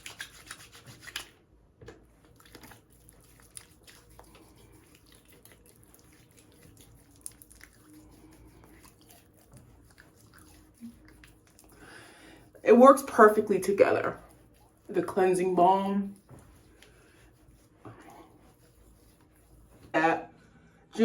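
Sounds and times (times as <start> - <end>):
hands washing face with soap: 0.0 - 19.9.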